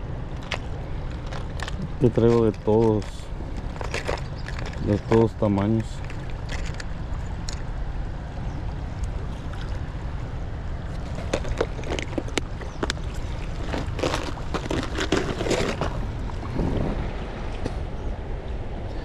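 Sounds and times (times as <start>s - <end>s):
handling fishing tackle: 0.4s - 7.7s, 10.9s - 16.0s
wind buffeting microphone: 0.8s - 19.0s.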